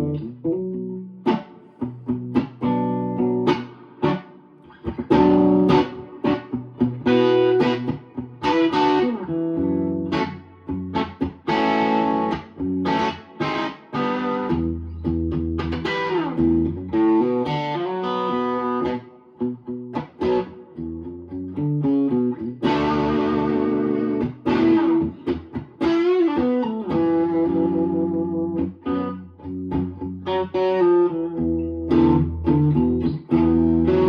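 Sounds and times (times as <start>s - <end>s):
electric guitar chords: 0.0s - 34.0s.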